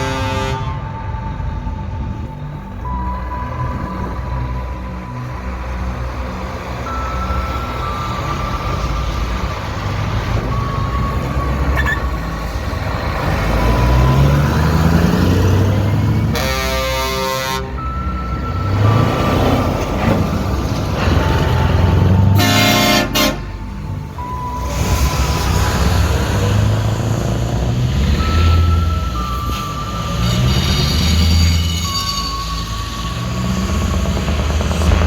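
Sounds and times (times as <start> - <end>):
truck horn blast: 0.0 - 1.1, 15.3 - 18.2, 21.2 - 23.7
heavy truck engine revving: 0.0 - 35.0.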